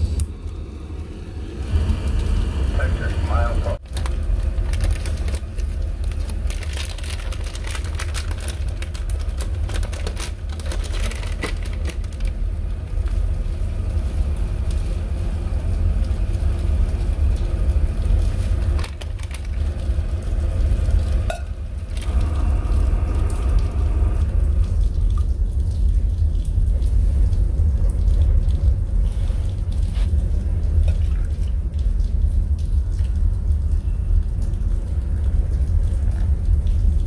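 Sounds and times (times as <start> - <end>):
steady low rumble: 0.0 - 37.0
rainwater dripping onto plastic: 3.8 - 37.0.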